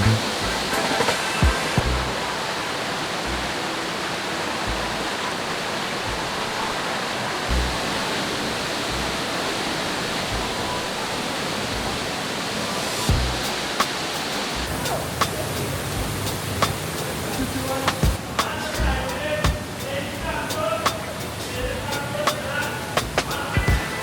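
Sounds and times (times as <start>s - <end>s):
low thumps: 0.0s - 2.4s, 13.1s - 13.6s
rushing stream water: 0.0s - 24.0s.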